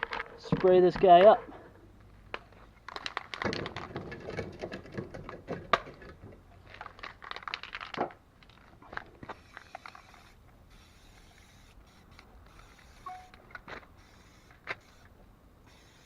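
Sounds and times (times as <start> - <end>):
spray can rattling: 2.8 - 5.2, 6.7 - 16.0.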